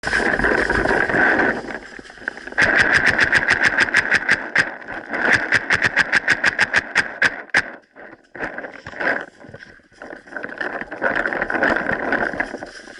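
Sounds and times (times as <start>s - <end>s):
paintball marker firing: 2.6s - 7.8s.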